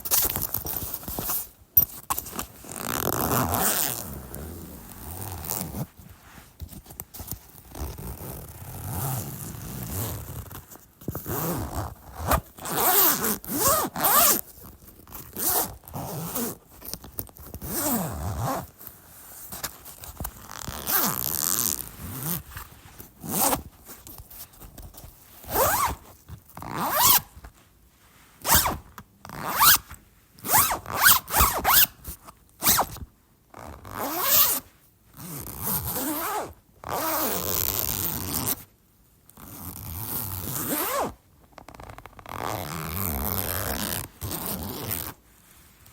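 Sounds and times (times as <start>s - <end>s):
bag zipper opening and shutting: 2.1s - 5.9s, 7.8s - 10.6s, 11.2s - 14.4s, 15.3s - 16.6s, 17.6s - 18.7s, 20.5s - 22.4s, 23.2s - 23.7s, 25.4s - 26.0s, 26.6s - 27.3s, 28.4s - 31.9s, 32.6s - 33.0s, 33.6s - 34.6s, 35.2s - 38.6s, 39.4s - 41.2s, 41.8s - 45.2s.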